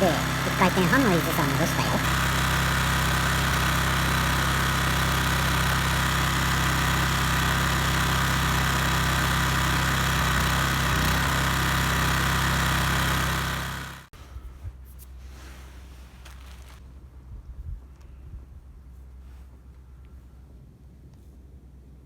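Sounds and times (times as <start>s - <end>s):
generator engine running: 0.0s - 14.1s.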